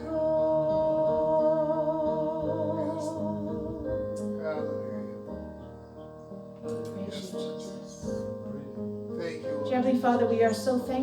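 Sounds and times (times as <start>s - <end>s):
singer holding a wavering note: 0.0s - 4.5s.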